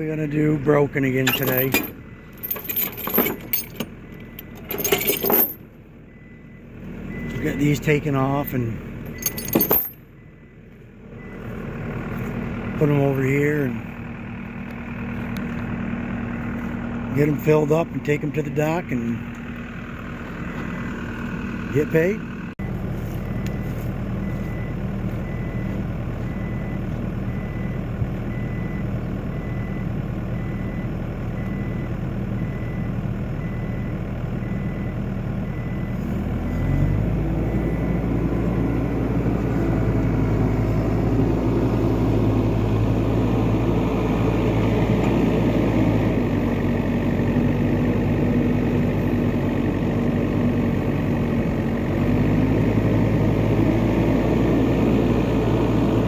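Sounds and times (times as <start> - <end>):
diesel engine running: 0.0 - 56.0
high backup alarm beeps: 6.1 - 7.8, 10.2 - 10.6, 22.6 - 36.8, 37.4 - 38.9.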